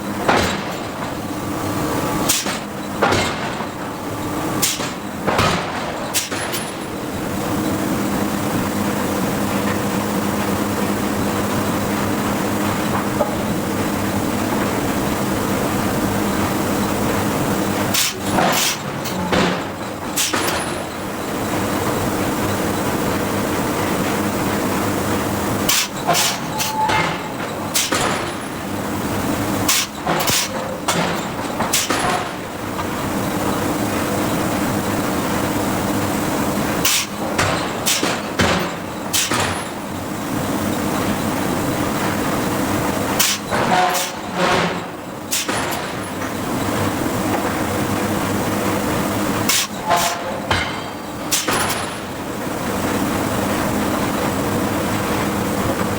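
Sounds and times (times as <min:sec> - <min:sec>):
machinery hum: 0:00.0 - 0:55.9
forging hammer striking steel: 0:49.5 - 0:51.8.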